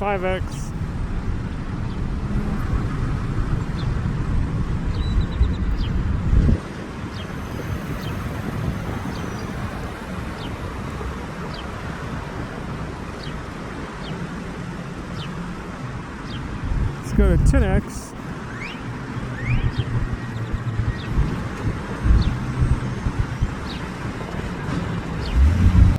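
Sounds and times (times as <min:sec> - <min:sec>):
traffic noise: 0:00.0 - 0:25.9
wind rumble on microphone: 0:00.0 - 0:25.9.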